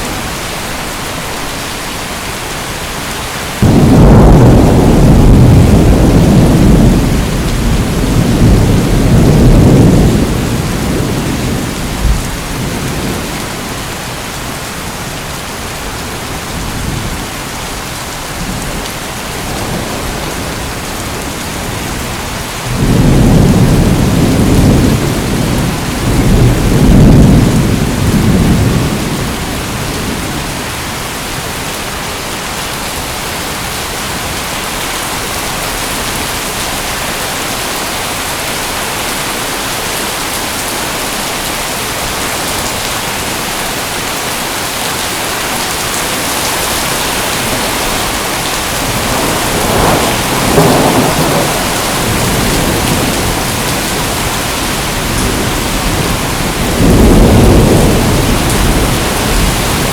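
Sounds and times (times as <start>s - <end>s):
heavy rain hissing: 0.0s - 59.9s
thunder rumbling: 3.6s - 14.0s, 18.4s - 30.7s, 45.0s - 59.9s.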